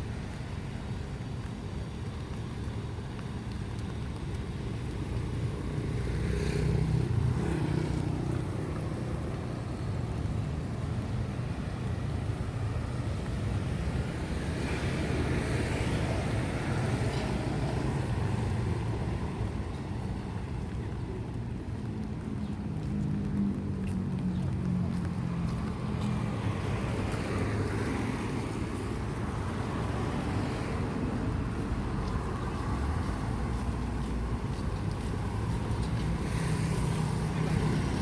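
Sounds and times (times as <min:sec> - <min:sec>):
tyres hissing on wet road: 0:00.0 - 0:21.0, 0:26.0 - 0:38.0
low traffic rumble: 0:00.0 - 0:38.0
vehicles passing on wet road: 0:00.0 - 0:38.0.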